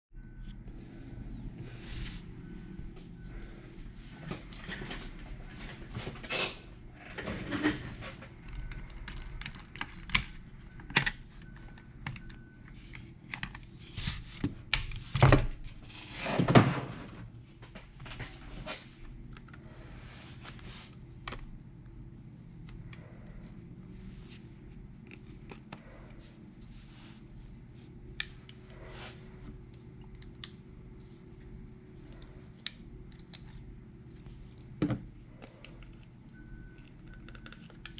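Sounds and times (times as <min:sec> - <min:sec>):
steady low hum: 0:00.1 - 0:37.9
small tools clicking and tapping: 0:36.8 - 0:37.9.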